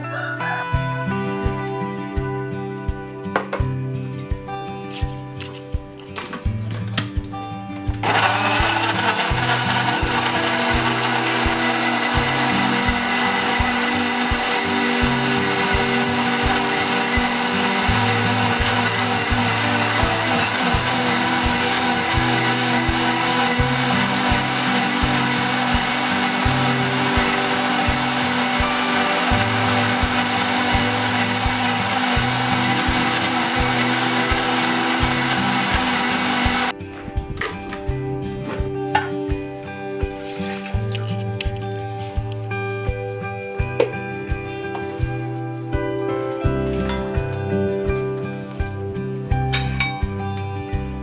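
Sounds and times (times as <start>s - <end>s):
background music with beat: 0.0s - 51.0s
electric blender running: 8.0s - 36.7s.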